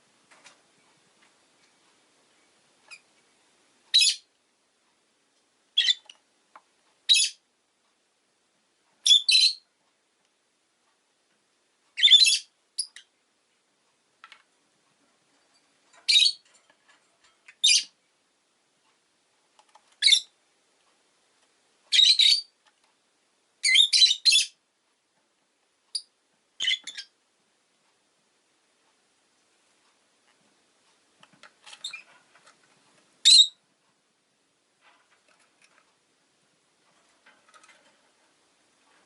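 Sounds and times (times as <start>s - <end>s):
lovebird shrill chirping calls: 3.9s - 4.3s, 5.8s - 6.2s, 7.1s - 7.4s, 9.0s - 9.6s, 12.0s - 13.1s, 16.0s - 16.4s, 17.6s - 18.0s, 20.0s - 20.3s, 21.9s - 22.5s, 23.6s - 24.6s, 25.9s - 27.2s, 31.8s - 32.1s, 33.2s - 33.6s.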